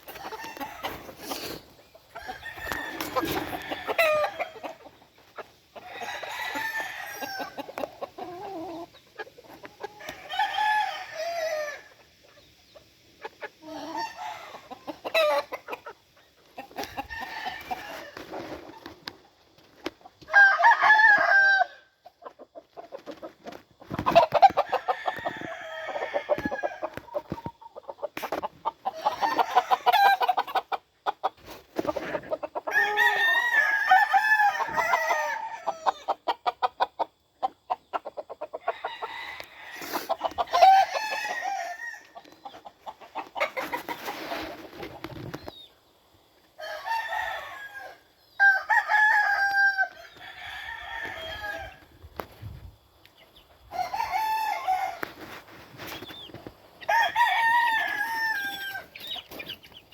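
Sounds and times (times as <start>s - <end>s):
roosters crowing: 0.0s - 4.9s, 5.8s - 8.9s, 9.9s - 12.0s, 13.6s - 15.7s, 16.6s - 18.6s, 20.2s - 22.0s, 23.9s - 27.4s, 28.9s - 30.7s, 31.8s - 37.1s, 38.2s - 44.7s, 46.6s - 52.0s, 53.6s - 55.6s, 56.8s - 59.8s.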